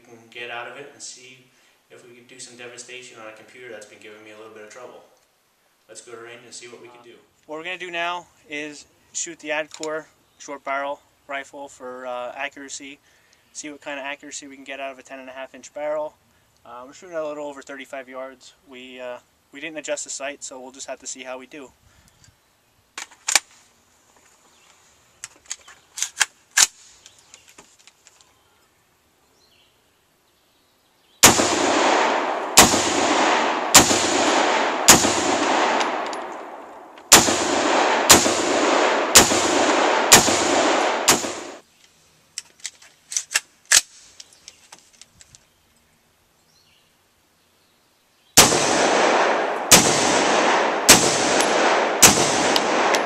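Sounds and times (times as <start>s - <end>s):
rifle shots with ringing echo: 31.2s - 41.6s, 48.4s - 53.0s.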